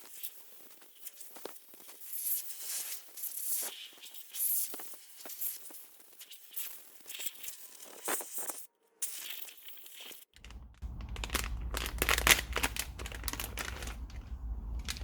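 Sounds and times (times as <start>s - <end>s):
scrubbing on hard plastic: 10.4s - 15.0s.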